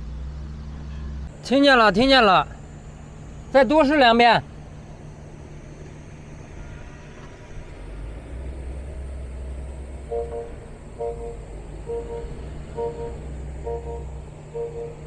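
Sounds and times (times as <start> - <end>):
low electric drive hum: 0.0 - 15.0
electronic warning beeps: 10.1 - 15.0.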